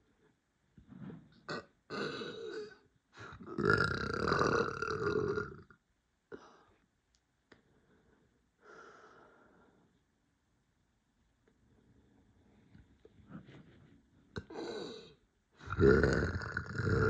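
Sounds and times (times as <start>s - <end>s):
person burping: 1.4s - 5.7s, 15.6s - 17.0s.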